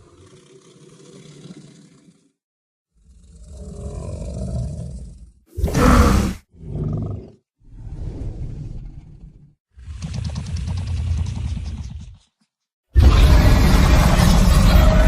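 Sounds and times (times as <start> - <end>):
monster roars: 5.5 - 7.3, 13.0 - 15.0.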